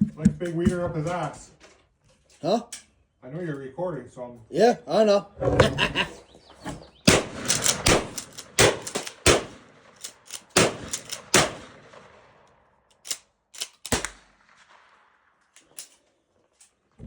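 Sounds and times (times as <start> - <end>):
shotgun shots: 7.0 - 12.4, 13.9 - 15.3
gun action clicks: 7.1 - 11.5, 12.5 - 14.9, 15.6 - 16.0
shotgun pump action clacking: 7.1 - 11.5, 12.9 - 14.5.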